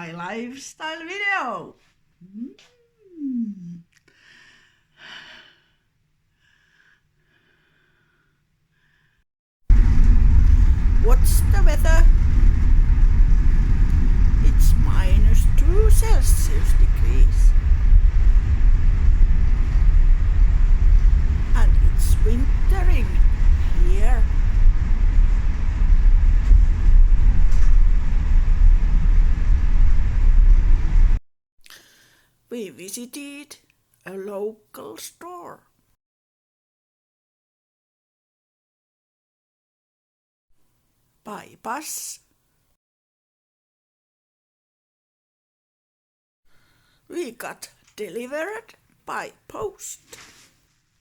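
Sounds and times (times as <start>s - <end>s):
person humming mm: 2.2s - 4.0s
bus engine and road noise: 9.7s - 31.2s.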